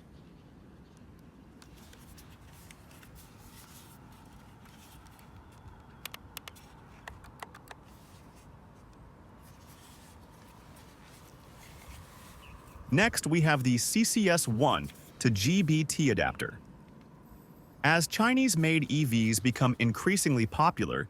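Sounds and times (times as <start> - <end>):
faint background hiss: 0.0 - 21.0
small sharp clicks: 5.0 - 7.9.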